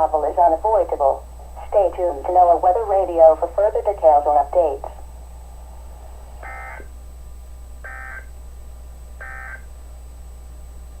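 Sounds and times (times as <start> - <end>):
screechy data tone bursts: 6.4 - 6.9, 7.8 - 8.3, 9.2 - 9.7.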